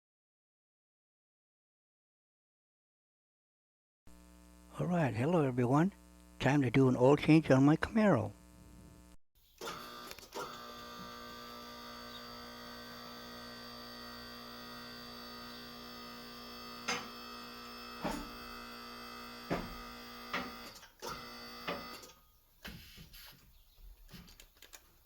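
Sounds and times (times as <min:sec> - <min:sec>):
hydraulic pump motor humming: 0:08.4 - 0:22.2.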